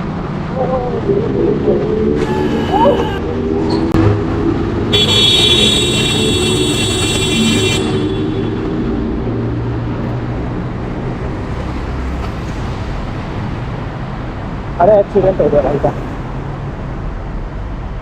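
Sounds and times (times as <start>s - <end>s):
road and traffic noise: 0.0s - 18.0s
loud high-pitched tone: 2.2s - 3.4s, 4.9s - 8.6s.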